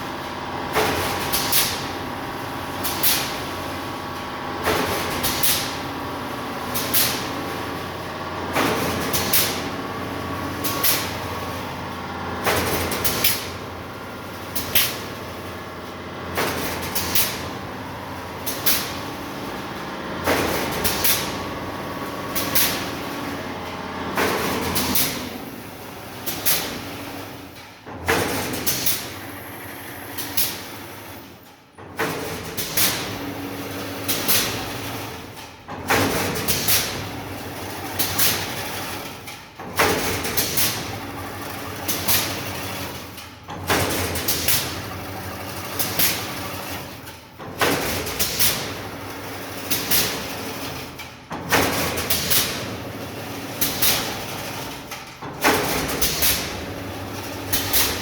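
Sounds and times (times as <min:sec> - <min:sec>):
sharp machine knock: 0:20.1 - 0:29.2, 0:35.7 - 0:37.2, 0:39.6 - 0:41.0, 0:43.2 - 0:46.5, 0:47.4 - 0:48.9, 0:49.6 - 0:52.8, 0:53.6 - 0:56.8.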